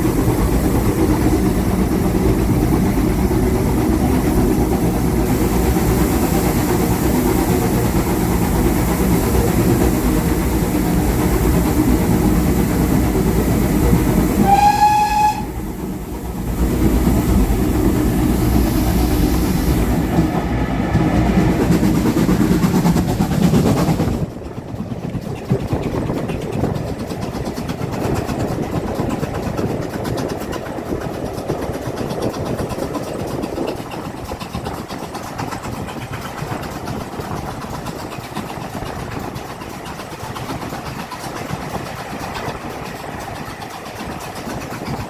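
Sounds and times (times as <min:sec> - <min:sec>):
train rumbling: 0:00.0 - 0:45.0
high-pitched train whistle toot: 0:14.3 - 0:15.6.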